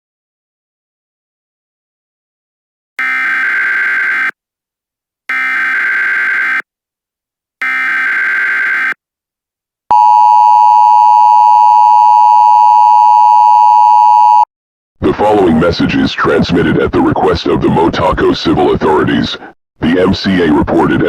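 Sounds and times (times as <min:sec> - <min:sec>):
two-tone attention signal: 0:09.9 - 0:14.5.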